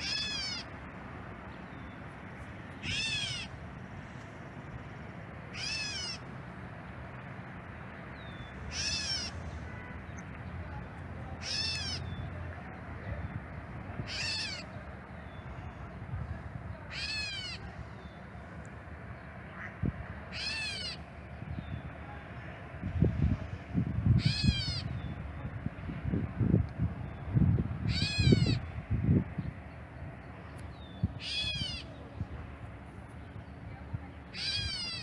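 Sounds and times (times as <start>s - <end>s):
bird whining call: 2.8s - 3.6s, 5.5s - 6.2s, 8.3s - 9.4s, 14.1s - 14.7s, 27.9s - 28.7s, 30.8s - 32.0s, 34.3s - 35.0s.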